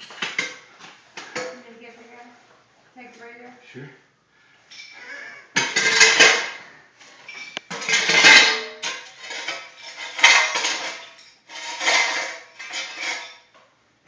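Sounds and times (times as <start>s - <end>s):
tile cracking and clattering: 5.6s - 6.5s, 7.3s - 13.6s.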